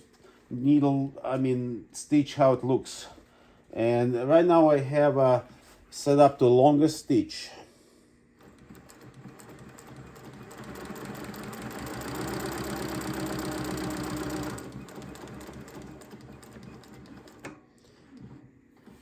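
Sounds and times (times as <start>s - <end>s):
sewing machine motor hum: 8.4s - 19.0s
sewing machine stitching: 8.4s - 19.0s.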